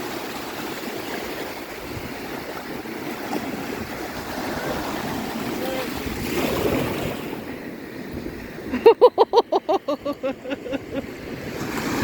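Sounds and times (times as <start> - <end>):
sea surf on beach: 0.0 - 12.0
wind on microphone: 1.2 - 8.8.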